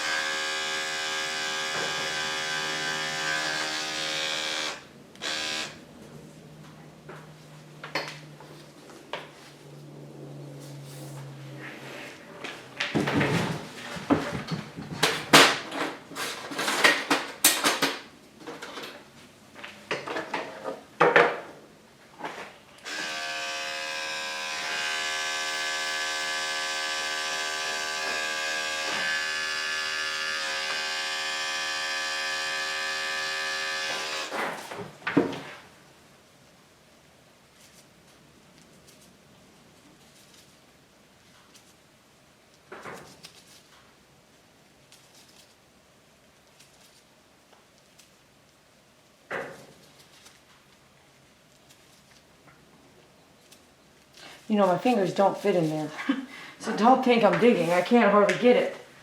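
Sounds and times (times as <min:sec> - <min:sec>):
electric clippers humming: 0:00.0 - 0:05.8, 0:22.8 - 0:34.3
tools clattering and knocking: 0:12.7 - 0:19.1, 0:19.9 - 0:21.6.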